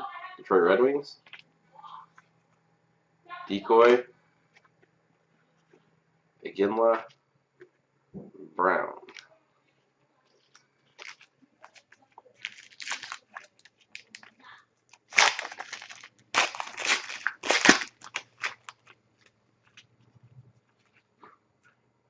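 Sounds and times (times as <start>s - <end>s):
plastic wrapper crinkling: 10.4s - 20.0s.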